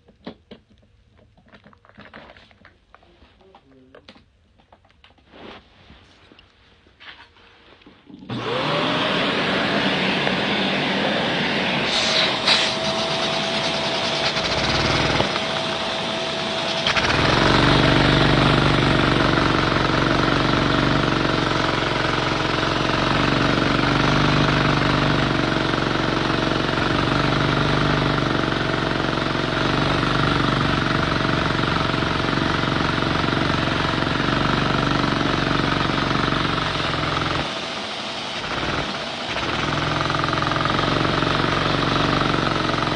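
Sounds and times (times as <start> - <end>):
model engine whirring: 11.8 - 37.5, 38.4 - 42.9.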